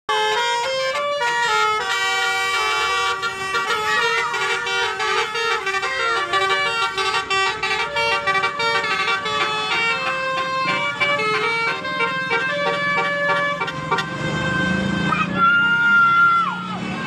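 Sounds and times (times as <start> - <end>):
musical bus horn playing a tune: 0.1 - 15.3.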